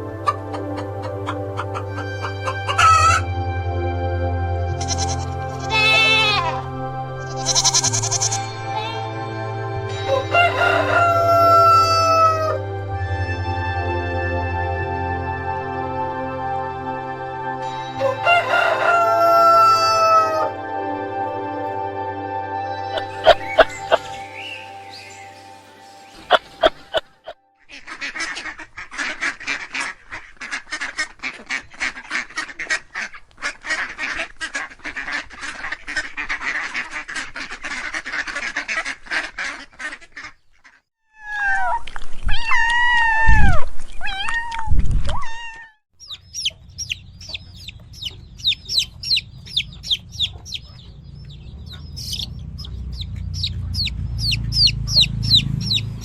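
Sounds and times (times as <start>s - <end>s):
ducks quacking: 0.0s - 3.3s, 4.7s - 9.3s, 10.1s - 12.6s, 23.0s - 40.9s, 46.0s - 56.0s
loud wavering honks: 0.0s - 27.7s, 49.7s - 56.0s
high bird peeps: 23.0s - 25.3s, 45.1s - 56.0s.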